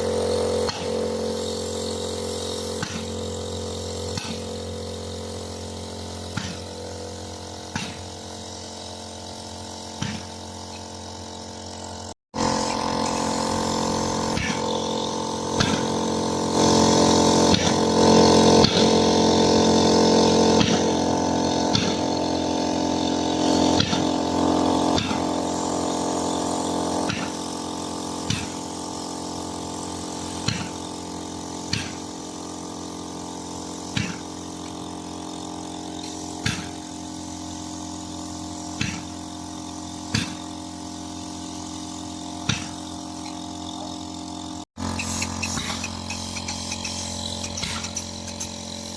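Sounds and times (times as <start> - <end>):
machine humming drone: 0.0 - 9.3, 12.4 - 48.9
sharp clicks: 45.0 - 48.5.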